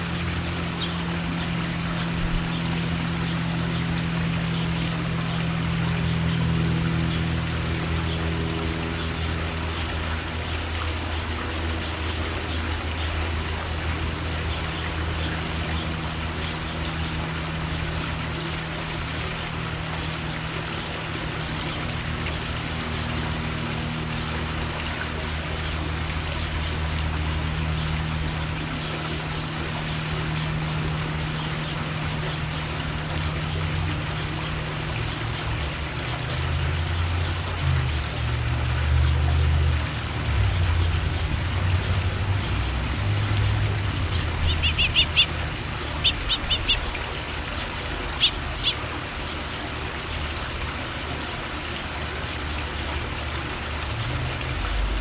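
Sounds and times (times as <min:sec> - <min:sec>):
low mechanical hum: 0:00.0 - 0:55.0
outdoor hiss of running water: 0:00.0 - 0:55.0.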